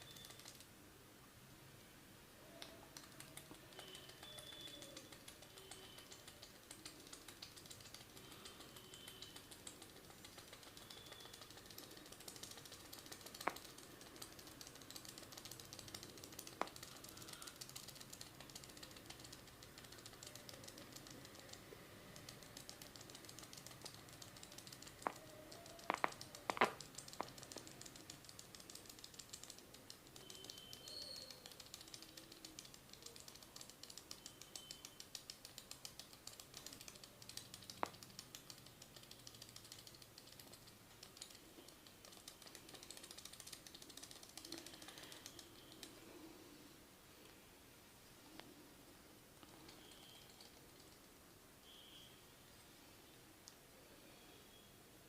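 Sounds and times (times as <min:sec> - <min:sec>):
hands tapping on head: 0:22.4 - 0:29.0.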